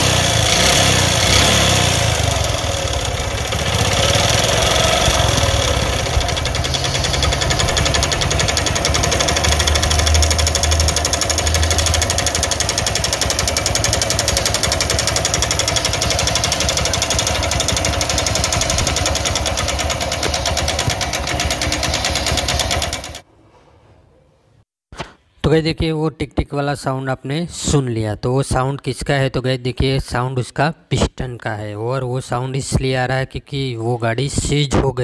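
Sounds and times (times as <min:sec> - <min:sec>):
motorcycle engine metallic ticking: 0:00.0 - 0:23.2.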